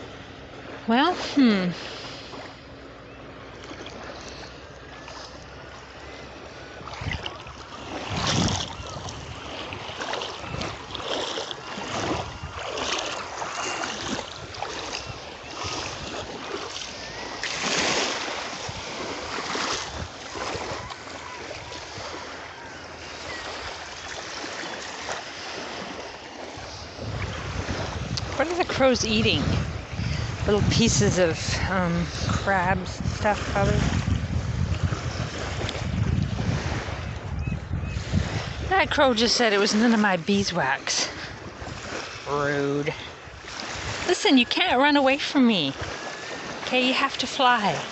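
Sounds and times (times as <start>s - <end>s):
small waves washing on shore: 0.0s - 47.9s
wind on microphone: 6.8s - 11.2s, 11.8s - 23.8s, 26.5s - 39.7s, 40.3s - 42.4s.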